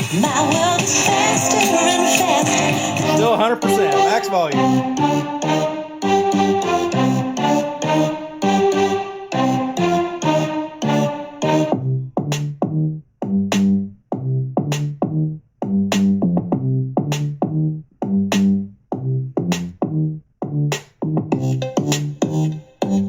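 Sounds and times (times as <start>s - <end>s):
electronic dance music: 0.0s - 12.6s, 21.4s - 23.0s.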